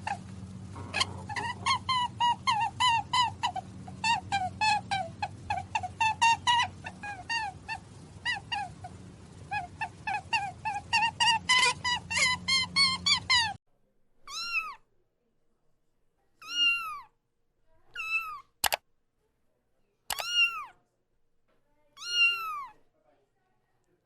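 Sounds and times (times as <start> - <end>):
rapid short animal calls: 0.0 - 13.6
cat meowing: 14.3 - 14.8, 16.4 - 17.1, 17.9 - 18.5, 20.1 - 20.8, 22.0 - 22.8
sharp clicks: 20.1 - 20.4.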